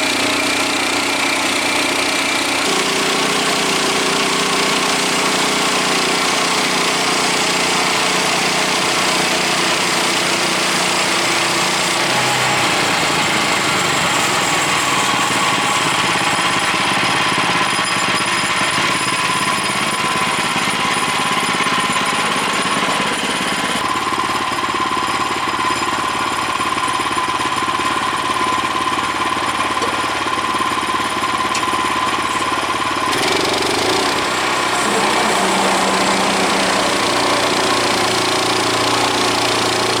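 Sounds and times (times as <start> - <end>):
band saw cutting log: 0.0 - 23.9, 33.0 - 40.0
gas engine under load: 0.0 - 23.9, 31.5 - 40.0.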